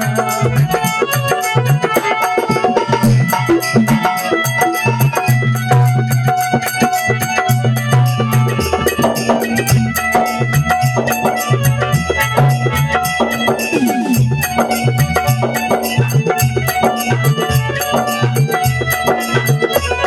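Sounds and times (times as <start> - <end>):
held keyboard melody notes: 0.0 - 18.7
quick steady drum beats: 0.0 - 20.0
pulsing bass line: 13.6 - 14.4.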